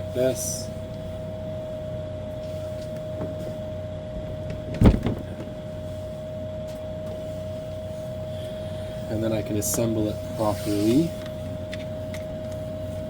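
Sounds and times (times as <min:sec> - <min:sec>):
high-pitched electrical hum: 0:00.0 - 0:13.0
sharp clunk: 0:04.4 - 0:05.6.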